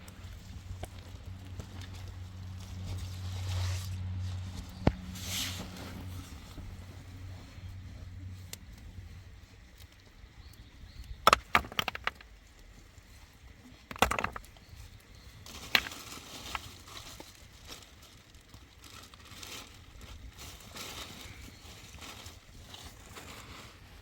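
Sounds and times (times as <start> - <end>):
objects knocking and clattering: 11.2 - 12.3, 13.8 - 14.6.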